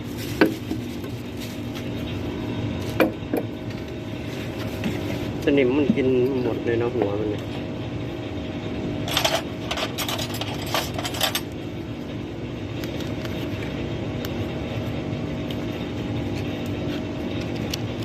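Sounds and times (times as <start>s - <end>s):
steady mechanical hum: 0.0s - 18.0s
hand tools clinking on metal: 9.1s - 11.5s.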